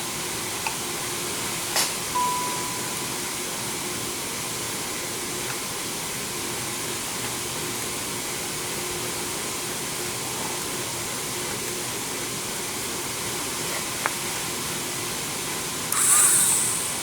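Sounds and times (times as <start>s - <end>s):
short click: 15.9s - 17.0s
small motor running: 15.9s - 17.0s.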